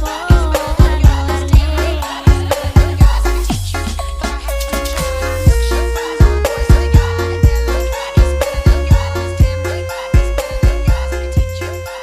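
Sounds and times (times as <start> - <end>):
electronic dance music with heavy bass: 0.0 - 12.0.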